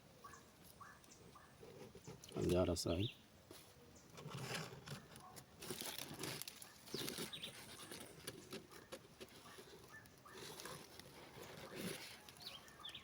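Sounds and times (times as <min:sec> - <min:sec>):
faint animal calls: 0:08.7 - 0:13.0.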